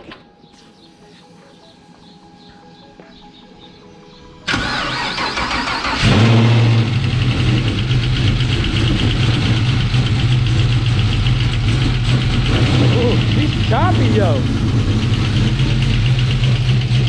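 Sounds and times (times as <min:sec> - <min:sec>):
starter cranking engine: 0:04.5 - 0:17.0
car engine choppy idle: 0:05.8 - 0:17.0.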